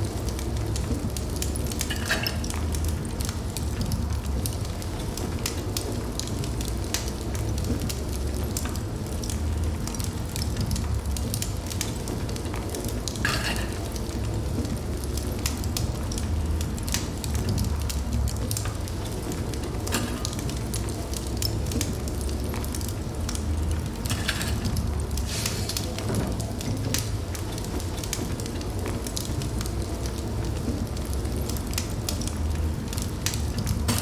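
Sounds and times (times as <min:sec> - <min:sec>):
fire crackling and popping: 0:00.0 - 0:34.0
fire rumbling: 0:00.0 - 0:34.0
fire hissing flare-ups: 0:23.5 - 0:26.1.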